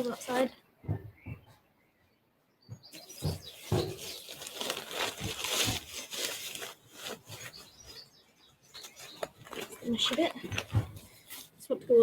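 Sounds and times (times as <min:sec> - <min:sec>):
soft knocks: 0:02.7 - 0:04.3
tent fabric rustling: 0:03.0 - 0:11.7.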